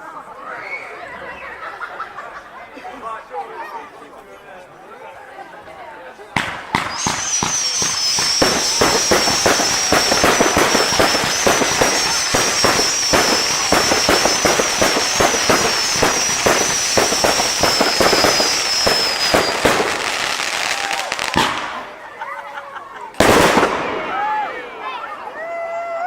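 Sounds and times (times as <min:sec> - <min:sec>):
fireworks bangs and cracks: 0:06.4 - 0:22.1, 0:23.2 - 0:25.2
high wavering whistle: 0:06.9 - 0:20.0.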